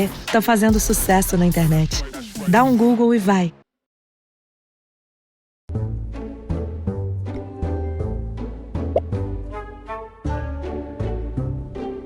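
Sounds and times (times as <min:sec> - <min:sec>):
background music with beat: 0:00.0 - 0:03.0.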